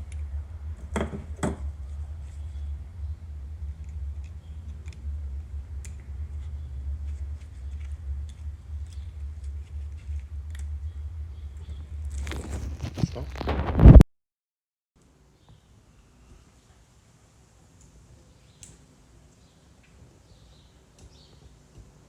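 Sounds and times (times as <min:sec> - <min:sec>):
steady low hum: 0:00.0 - 0:14.0
sharp knocks: 0:00.8 - 0:01.7.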